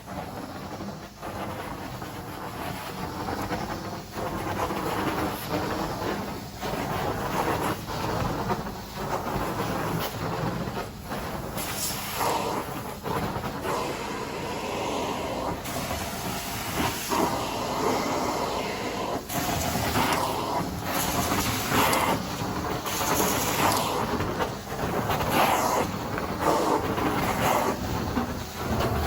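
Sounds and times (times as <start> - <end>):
carpet cleaning wand hissing: 0.0 - 29.0
steady machine drone: 0.0 - 29.0.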